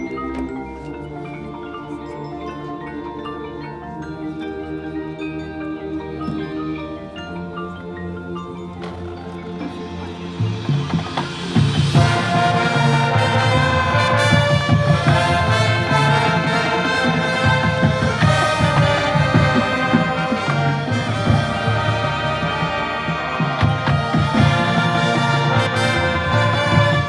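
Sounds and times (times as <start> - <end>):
marching band playing: 8.8 - 27.0.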